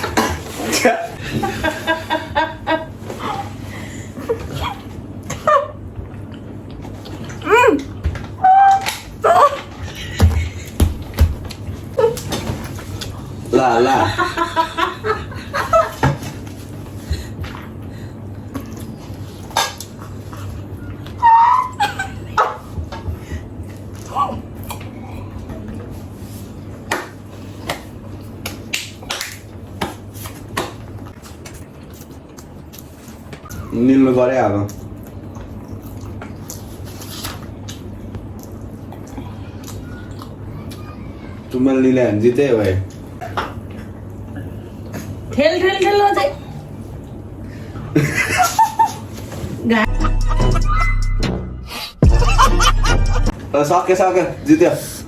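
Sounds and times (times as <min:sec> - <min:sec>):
eating clicks and smacks: 0:34.7 - 0:40.8
low hum: 0:49.9 - 0:53.4.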